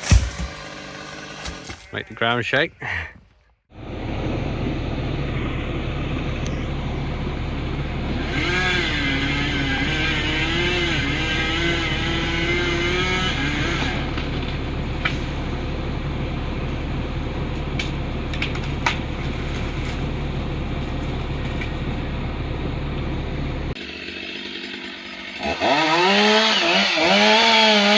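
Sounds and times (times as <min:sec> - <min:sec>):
heavy machinery rumbling: 0:00.0 - 0:10.8.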